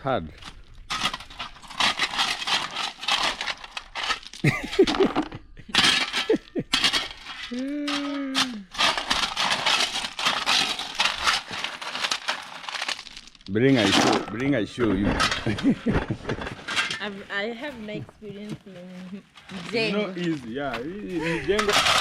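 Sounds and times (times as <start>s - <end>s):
crushed stone scraping and clattering: 0.3s - 22.0s.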